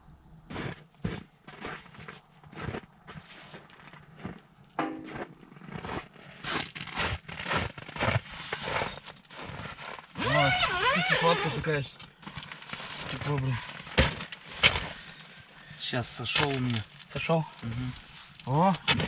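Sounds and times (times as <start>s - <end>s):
scraping and knocking on ice: 4.8s - 15.1s, 18.8s - 19.0s
brief squeak: 10.2s - 11.9s.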